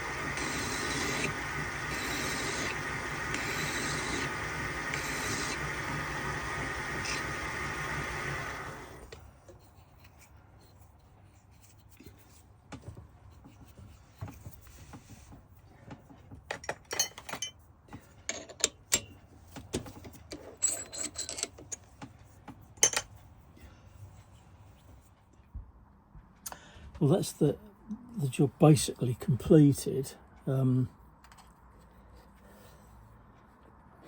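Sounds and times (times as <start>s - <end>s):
machine hiss: 0.0s - 9.1s
metal tools clinking on workbench: 16.5s - 17.6s, 20.3s - 21.8s, 22.8s - 23.1s.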